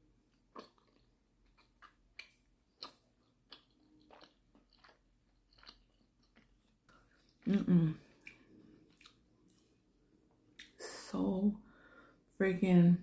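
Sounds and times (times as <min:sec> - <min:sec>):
chewing with wet mouth smacks: 0:00.5 - 0:09.7.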